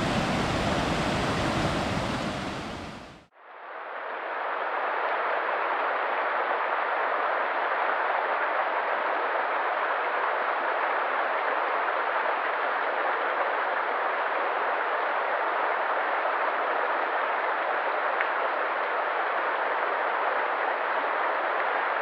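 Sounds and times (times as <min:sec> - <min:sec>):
river water rushing: 0:00.0 - 0:03.3.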